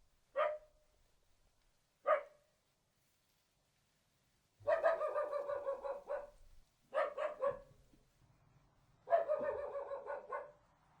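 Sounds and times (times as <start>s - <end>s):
small dog barking: 0.3s - 0.7s, 2.0s - 2.4s, 4.6s - 7.8s, 9.0s - 10.6s.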